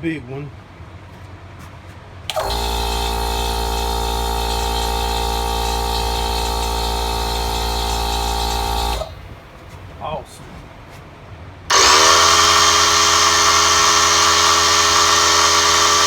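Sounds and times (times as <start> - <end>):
compressor switch click: 2.3 - 9.4
air compressor running: 2.3 - 10.2, 11.7 - 16.0.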